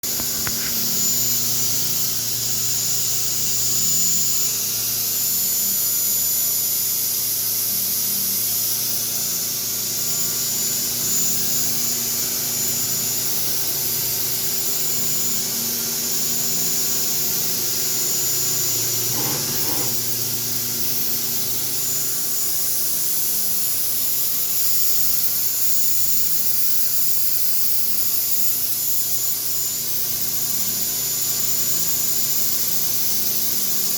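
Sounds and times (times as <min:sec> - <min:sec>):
milling machine spindle whine: 0:08.6 - 0:24.6.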